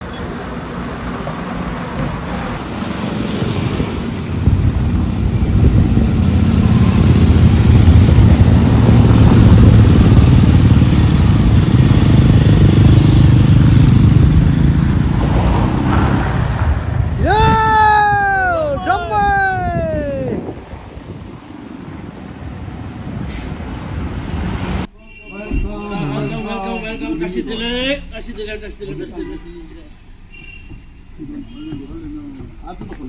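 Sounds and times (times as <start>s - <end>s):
motorcycle engines running: 3.5s - 15.8s.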